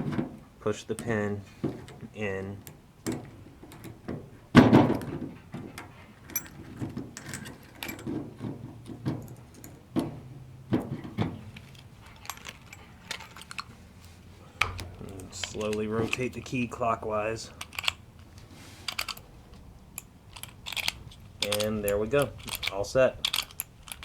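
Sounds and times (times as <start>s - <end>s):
key clicking in ignition lock: 17.6s - 19.3s, 20.0s - 24.0s.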